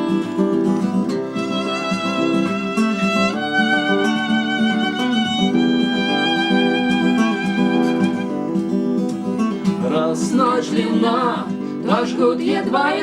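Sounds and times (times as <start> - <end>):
violin melody with held notes: 0.0 - 9.8
guitar accompaniment: 0.0 - 13.0.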